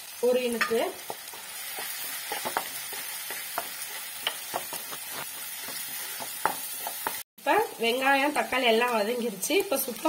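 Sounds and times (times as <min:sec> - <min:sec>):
food sizzling in oil: 0:00.0 - 0:10.0
spoon scraping and tapping pan: 0:00.5 - 0:07.2.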